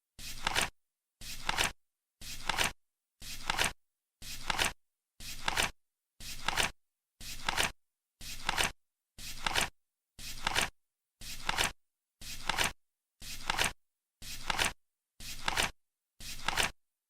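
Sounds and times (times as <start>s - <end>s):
flip clock cards flipping: 0.3s - 0.7s, 1.4s - 2.7s, 3.3s - 3.7s, 4.4s - 4.7s, 5.3s - 5.7s, 6.4s - 6.7s, 7.3s - 7.7s, 8.3s - 8.8s, 9.4s - 9.7s, 10.3s - 10.7s, 11.3s - 13.8s, 14.4s - 14.8s, 15.4s - 15.7s, 16.3s - 16.7s.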